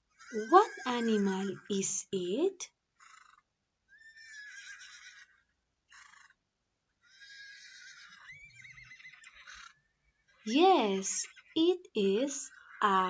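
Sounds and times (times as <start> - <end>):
horse neighing: 3.9 - 5.4, 7.1 - 9.8.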